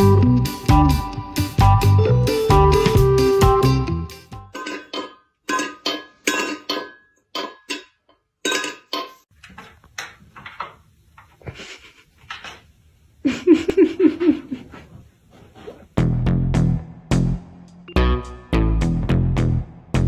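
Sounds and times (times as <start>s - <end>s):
dishes clattering and clinking: 4.5s - 11.4s.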